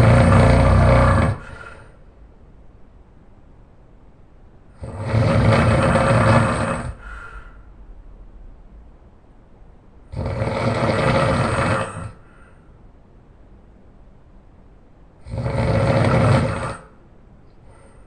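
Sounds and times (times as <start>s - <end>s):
person snoring loudly: 0.0s - 1.9s, 4.8s - 7.4s, 10.1s - 12.4s, 15.2s - 17.0s.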